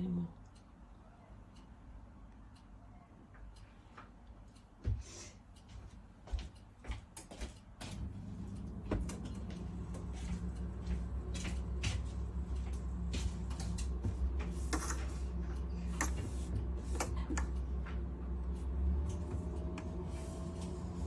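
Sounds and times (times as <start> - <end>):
espresso machine humming: 8.1 - 21.0.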